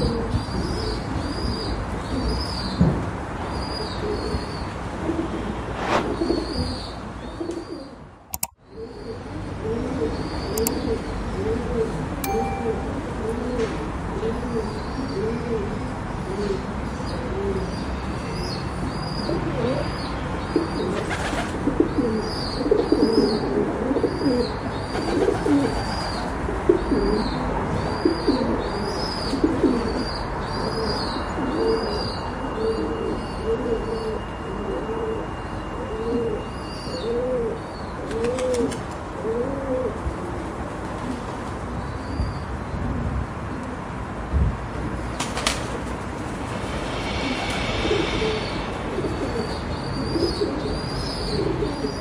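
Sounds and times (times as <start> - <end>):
pigeons cooing: 8.7 - 12.0, 20.7 - 27.4, 37.0 - 40.4, 49.0 - 52.0.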